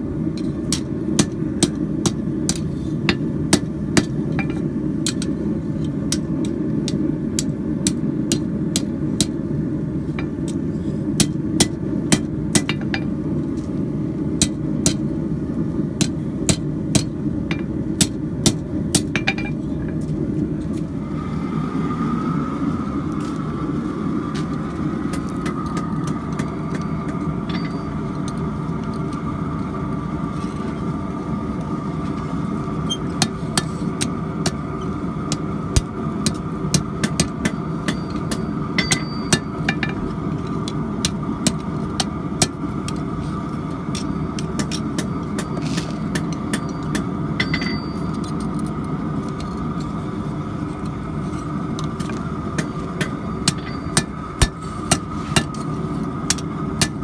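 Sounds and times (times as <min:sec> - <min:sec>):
forge roaring: 0:20.9 - 0:39.1.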